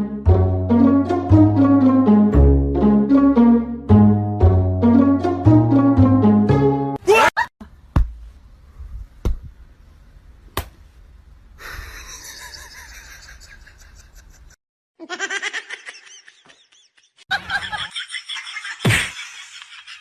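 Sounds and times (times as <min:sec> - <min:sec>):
people laughing: 0:11.9 - 0:20.0.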